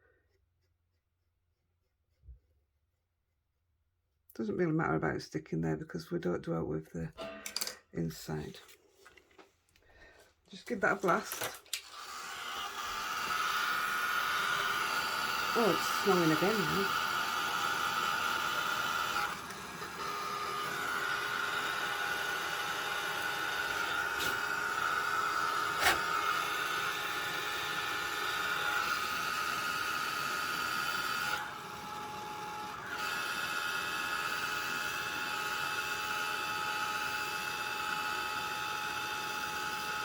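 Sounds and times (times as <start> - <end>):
hot-air blower motor whine: 11.9 - 40.0.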